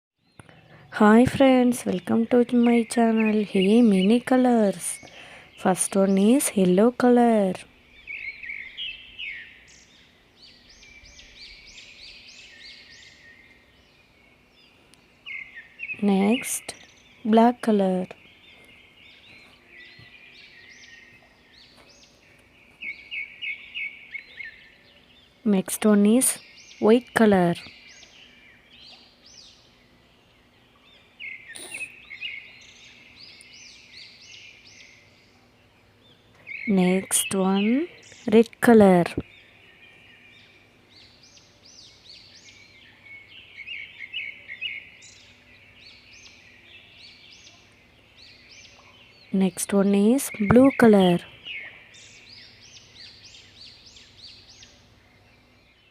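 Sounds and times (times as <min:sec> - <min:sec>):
small birds chirping: 0:00.2 - 0:55.9
bird short chirps: 0:31.4 - 0:32.1.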